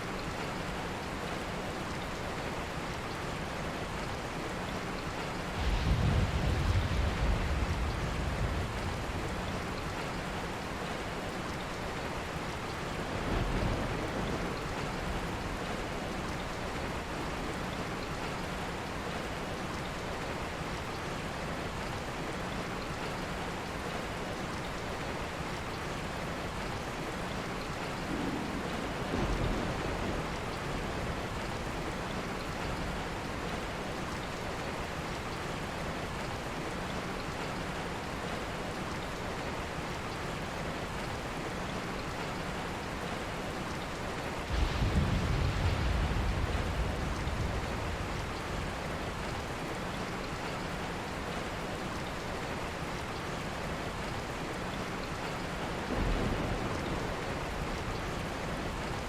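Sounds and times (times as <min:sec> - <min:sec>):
steady rain falling: 0:00.0 - 0:59.0
thunder rumbling: 0:05.5 - 0:10.4, 0:28.0 - 0:32.0, 0:44.4 - 0:49.5, 0:55.8 - 0:59.0.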